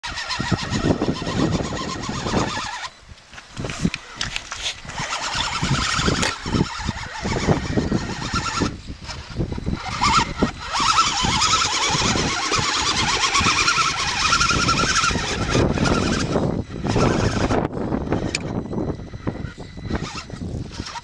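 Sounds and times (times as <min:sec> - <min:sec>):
rough uneven rumble: 0:00.0 - 0:21.0
toy car electric motor whining: 0:00.0 - 0:21.0.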